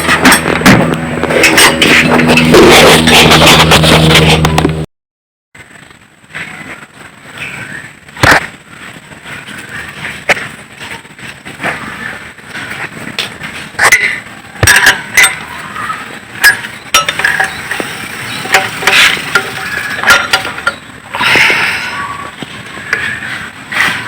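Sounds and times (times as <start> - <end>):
metal tools clinking: 16.4 - 20.8.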